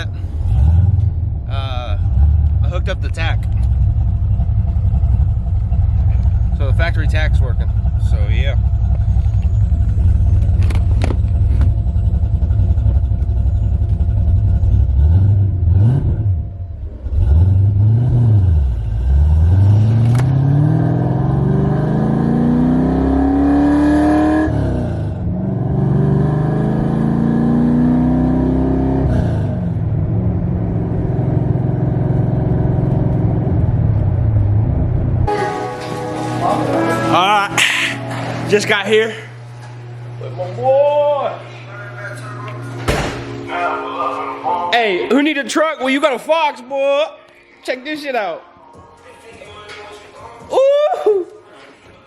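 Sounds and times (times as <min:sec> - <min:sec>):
car engine revving while driving: 0:00.0 - 0:35.3.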